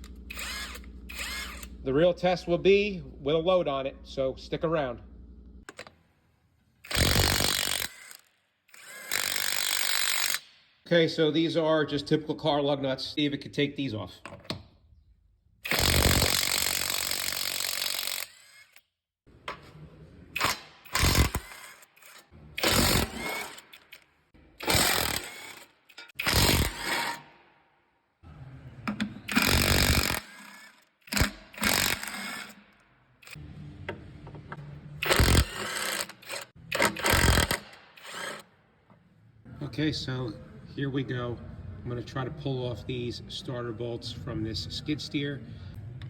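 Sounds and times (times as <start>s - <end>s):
impact wrench hammering: 6.9s - 8.2s, 8.8s - 10.6s, 15.7s - 18.4s, 20.4s - 23.9s, 24.6s - 27.3s, 29.0s - 32.6s, 33.2s - 38.4s.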